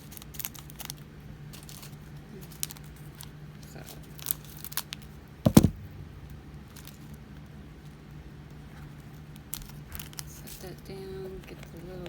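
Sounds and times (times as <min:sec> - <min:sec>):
knock on tabletop: 0:05.5 - 0:06.0
steady low hum: 0:05.5 - 0:07.6.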